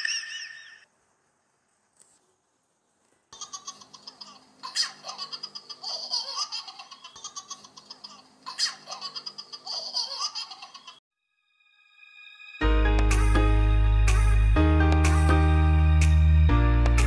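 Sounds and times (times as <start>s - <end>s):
high-pitched laughter: 0.0s - 0.8s, 3.4s - 11.0s.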